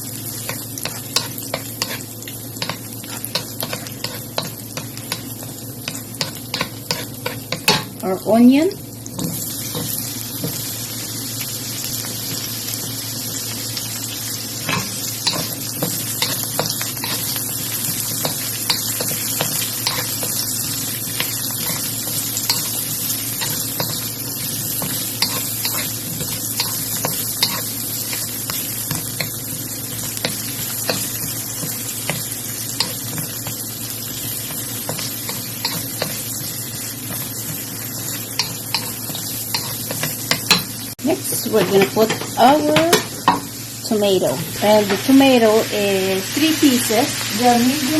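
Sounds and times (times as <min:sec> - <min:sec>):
onion sizzling in a frying pan: 0:00.0 - 0:47.9
spatula scraping a pan: 0:00.4 - 0:07.9, 0:09.1 - 0:10.7, 0:14.6 - 0:43.4.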